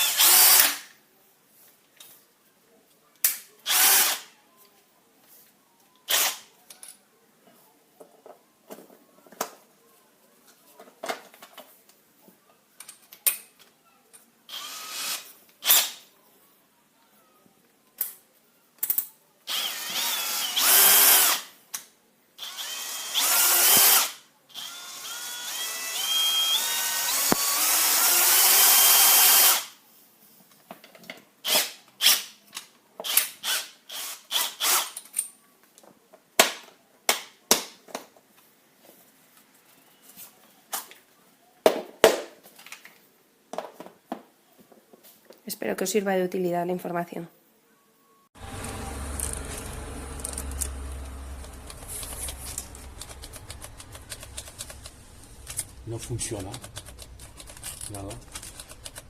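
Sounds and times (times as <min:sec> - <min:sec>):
cordless drill motor: 0:03.7 - 0:04.2, 0:14.5 - 0:15.3, 0:19.5 - 0:21.5, 0:22.4 - 0:29.7, 0:48.4 - 0:55.8.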